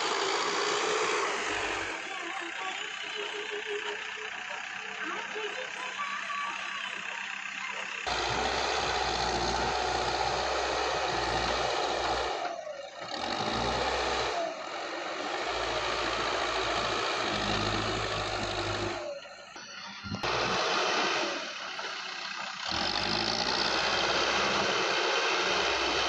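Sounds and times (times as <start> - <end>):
heavy diesel engine running: 0.0 - 26.0.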